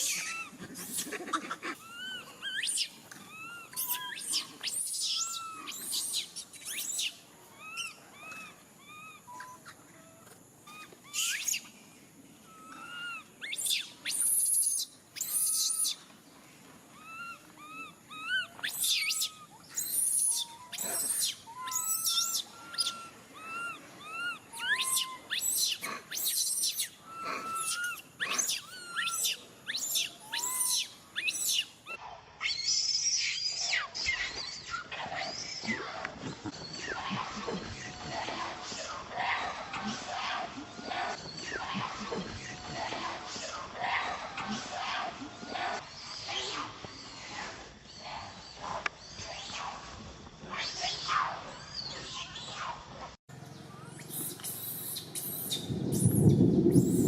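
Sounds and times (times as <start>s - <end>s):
baby monkey whimpering: 0.0s - 11.6s, 12.5s - 16.0s, 16.9s - 31.6s.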